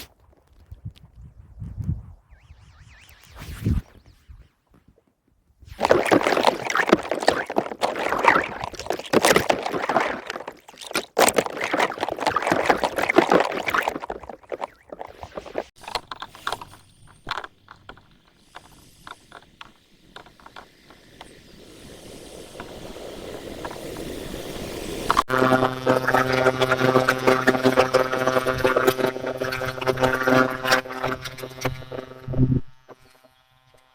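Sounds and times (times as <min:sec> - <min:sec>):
water dripping: 0:05.7 - 0:25.2
water splashing and gurgling: 0:05.7 - 0:32.2.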